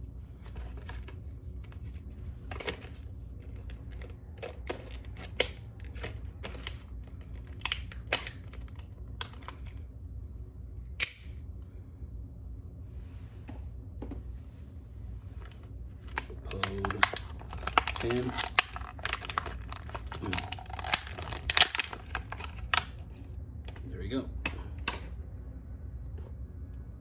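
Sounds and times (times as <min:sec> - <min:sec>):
packaging clicking and rustling: 0:00.4 - 0:09.8, 0:15.4 - 0:23.0.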